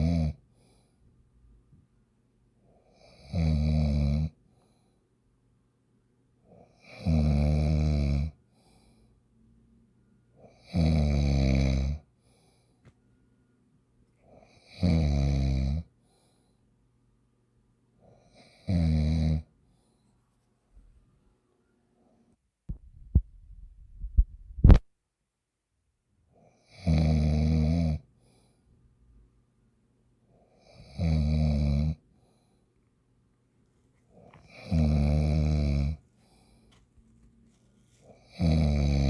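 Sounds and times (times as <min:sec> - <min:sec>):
loud snoring: 0:03.0 - 0:04.4, 0:06.8 - 0:08.4, 0:10.6 - 0:12.0, 0:14.7 - 0:15.9, 0:18.5 - 0:19.5, 0:26.7 - 0:28.0, 0:30.7 - 0:32.0, 0:34.4 - 0:36.0, 0:38.3 - 0:39.0.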